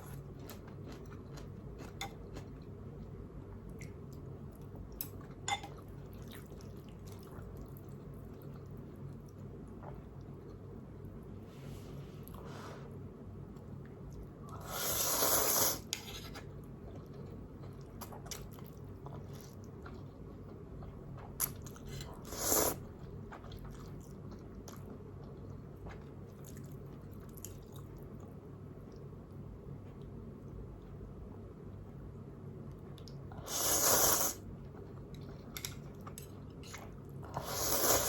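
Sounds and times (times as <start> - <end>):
soft chewing with wet mouth clicks: 0.0 - 10.7, 16.4 - 22.2, 22.9 - 31.0, 32.7 - 33.2.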